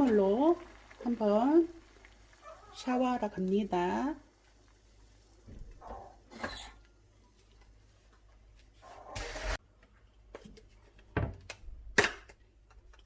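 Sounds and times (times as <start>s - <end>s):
running water: 0.0s - 7.6s.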